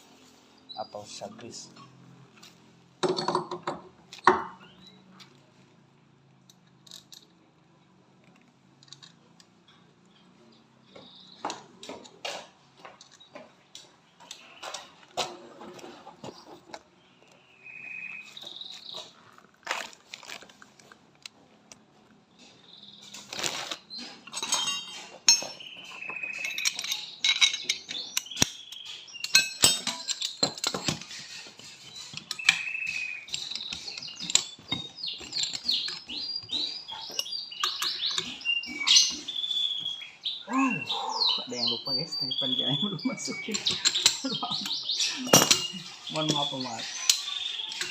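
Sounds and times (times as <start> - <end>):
birds chirping: 0.0 - 2.3, 3.7 - 5.2, 9.7 - 12.2, 13.1 - 20.3, 22.2 - 47.9
metal tools clinking and knocking: 3.0 - 5.0, 6.5 - 7.4, 23.1 - 39.3, 42.8 - 47.9.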